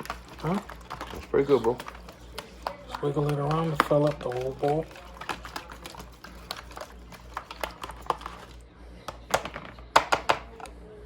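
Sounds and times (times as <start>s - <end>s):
whisk clicking against a bowl: 0.0s - 8.4s.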